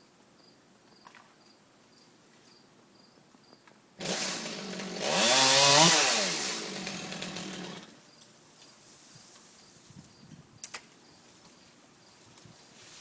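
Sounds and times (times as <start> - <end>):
chainsaw revving: 4.0 - 8.0.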